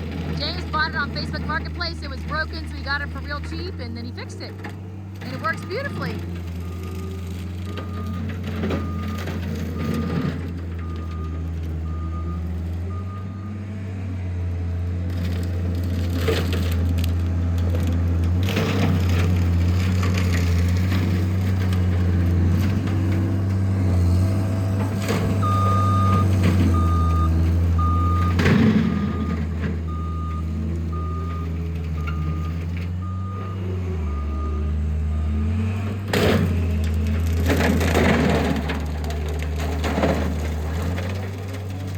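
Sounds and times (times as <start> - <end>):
diesel engine under load: 0.0 - 41.9
backup alarm beeping: 5.2 - 8.1, 25.4 - 35.5
brush and trees crashing: 14.9 - 33.0, 35.4 - 41.9.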